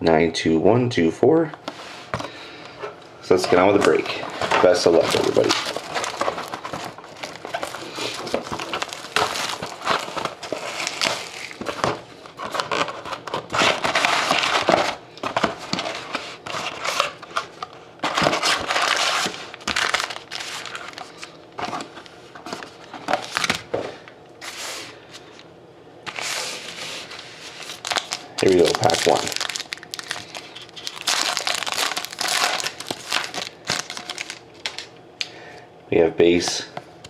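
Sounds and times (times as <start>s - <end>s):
plastic wrapping crinkling and tearing: 3.3s - 21.9s, 26.1s - 34.9s.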